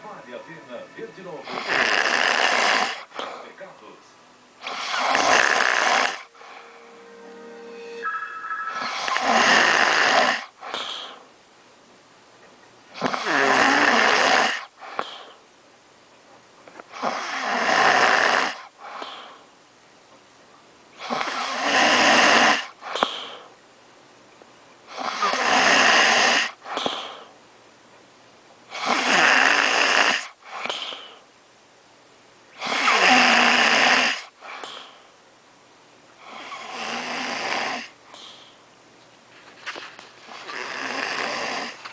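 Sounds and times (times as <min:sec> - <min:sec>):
person snoring loudly: 0:01.4 - 0:03.1, 0:04.6 - 0:06.6, 0:13.0 - 0:14.7, 0:17.0 - 0:18.6, 0:21.0 - 0:22.7, 0:24.9 - 0:26.6, 0:28.8 - 0:30.3, 0:32.6 - 0:34.3, 0:36.2 - 0:37.9, 0:40.4 - 0:41.8
soft breath: 0:14.8 - 0:15.4, 0:22.8 - 0:23.6, 0:30.4 - 0:31.3, 0:34.4 - 0:35.2, 0:38.1 - 0:38.6.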